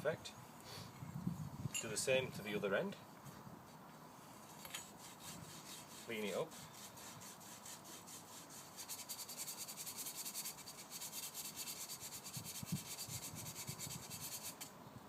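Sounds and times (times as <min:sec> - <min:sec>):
sandpaper rubbing on copper pipe: 0:04.3 - 0:14.7.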